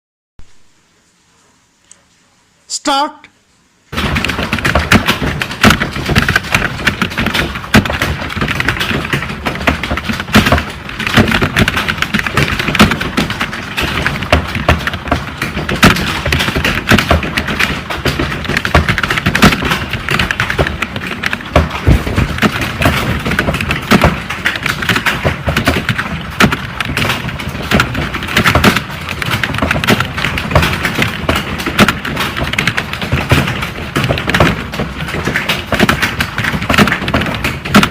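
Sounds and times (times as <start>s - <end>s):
fast typing on keyboard: 3.9s - 37.9s.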